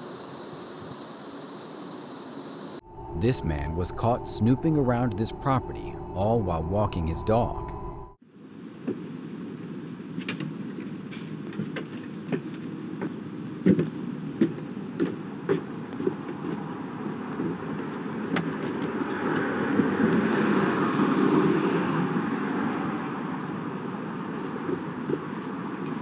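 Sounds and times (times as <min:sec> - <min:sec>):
microphone background hiss: 0:02.9 - 0:08.2.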